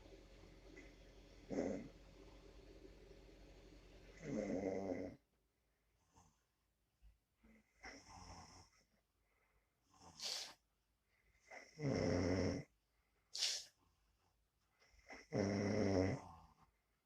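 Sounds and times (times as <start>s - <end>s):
rattling snores: 1.5s - 1.9s, 4.1s - 5.2s, 11.5s - 12.7s, 15.0s - 16.7s
sharp hissing breath: 10.2s - 10.6s, 13.3s - 13.7s.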